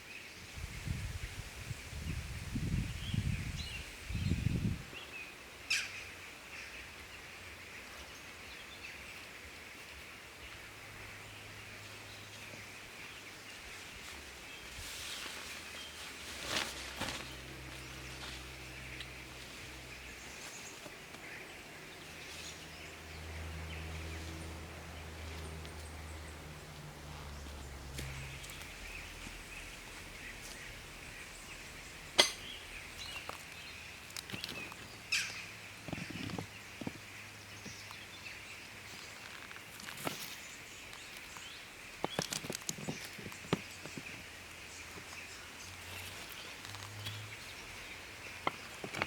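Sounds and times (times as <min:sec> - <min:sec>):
high-pitched forest background hiss: 0:00.0 - 0:17.2.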